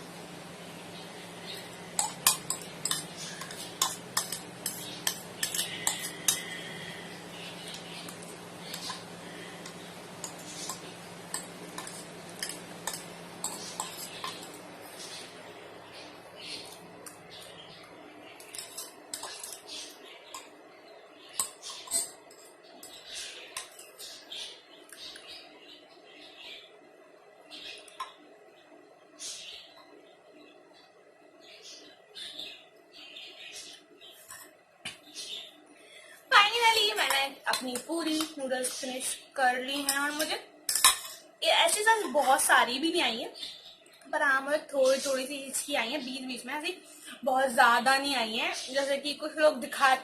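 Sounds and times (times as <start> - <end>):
cutlery clinking against dish: 2.0 - 6.6, 9.6 - 14.6, 18.4 - 20.5, 21.4 - 24.0, 39.8 - 41.3.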